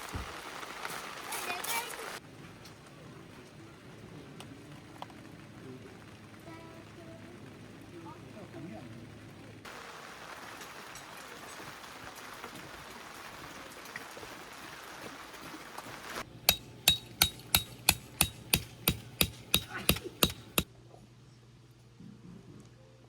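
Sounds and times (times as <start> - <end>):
faint steady hiss: 0.0 - 21.9
hammer striking tent peg: 16.5 - 20.7.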